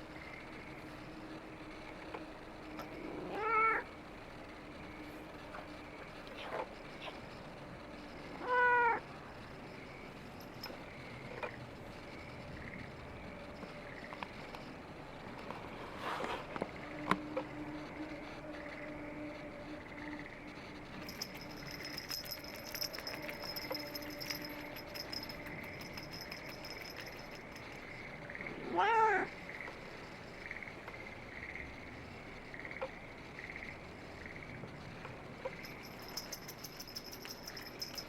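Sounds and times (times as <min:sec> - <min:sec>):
cat meowing: 0:03.3 - 0:03.8
faint high-pitched chirping: 0:16.8 - 0:38.0.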